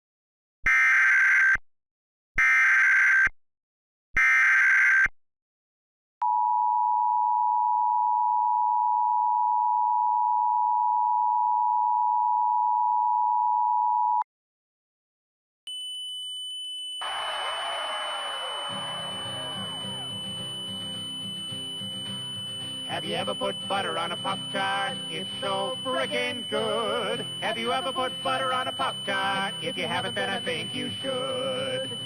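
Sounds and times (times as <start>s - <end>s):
two-tone attention signal: 17.0s - 32.0s
warbling digital data bursts: 17.0s - 32.0s.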